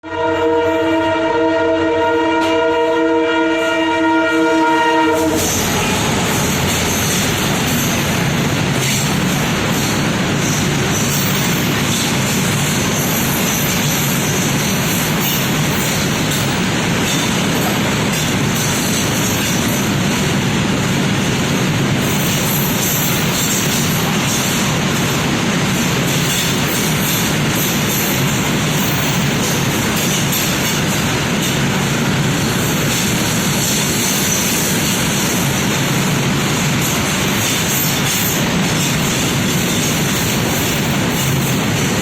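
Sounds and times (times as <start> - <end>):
locomotive air horn: 0.0 - 6.6
moving train rumbling and rattling: 0.2 - 42.0.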